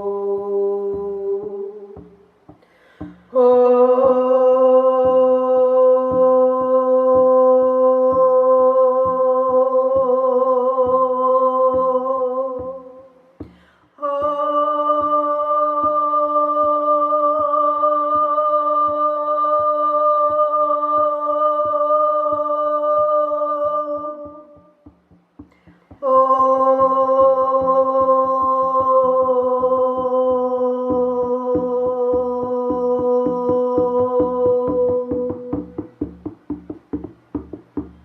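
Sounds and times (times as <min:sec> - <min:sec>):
hand drum beating: 0:00.0 - 0:38.0
breath: 0:02.6 - 0:03.3, 0:13.4 - 0:14.0, 0:25.5 - 0:25.9.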